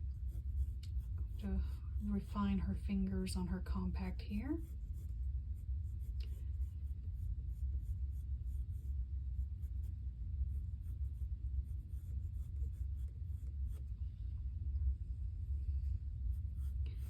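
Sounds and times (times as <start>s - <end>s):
pencil scratching on paper: 0.0s - 2.6s, 4.3s - 13.9s, 16.1s - 17.0s
steady low rumble: 0.0s - 17.0s.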